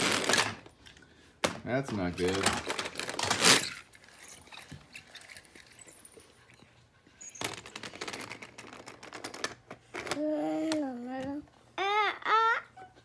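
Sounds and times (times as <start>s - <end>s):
plastic toy pieces clattering: 0.0s - 0.7s, 1.9s - 6.1s, 7.3s - 10.2s.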